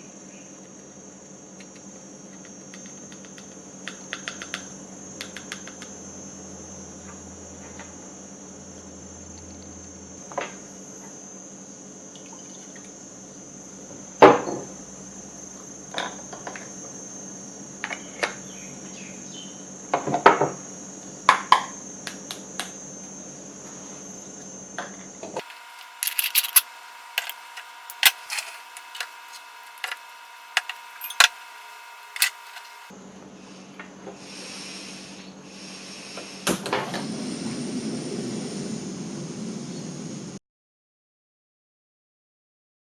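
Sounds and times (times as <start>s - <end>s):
faint steady hum: 22.8s - 40.4s
metal moka pot and utensils clinking: 25.4s - 31.5s.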